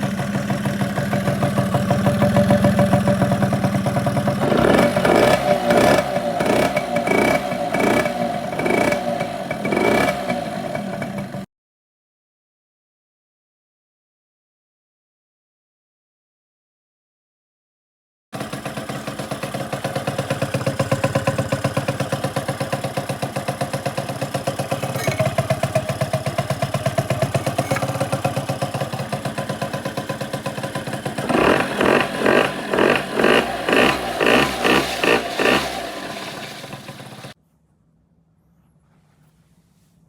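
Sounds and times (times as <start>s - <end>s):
engine throttle blips: 0.0s - 11.5s, 31.2s - 37.4s
two-stroke engine idling: 0.0s - 11.5s, 18.4s - 37.4s.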